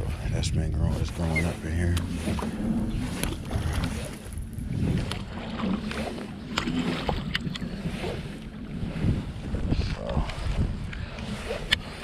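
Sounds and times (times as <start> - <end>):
water sloshing around kayak: 0.0 - 12.0
wind on microphone: 0.0 - 12.0.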